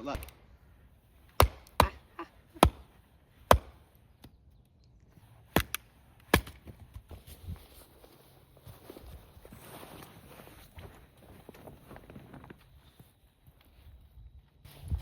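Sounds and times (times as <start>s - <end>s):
blade striking wood: 1.4s - 2.0s, 3.5s - 4.3s.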